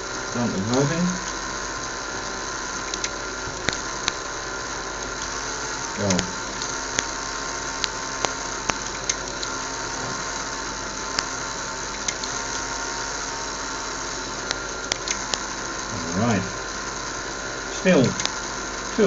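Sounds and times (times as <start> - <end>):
electric motors whirring: 0.0 - 19.0
sharp clicks: 0.1 - 1.4, 2.8 - 4.2, 5.0 - 12.7, 14.4 - 15.5, 18.0 - 18.9.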